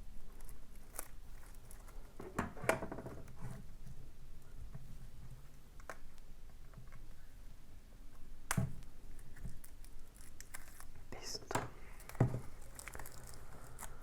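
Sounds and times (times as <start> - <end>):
handling packaging: 0.3 - 2.4, 8.8 - 14.0.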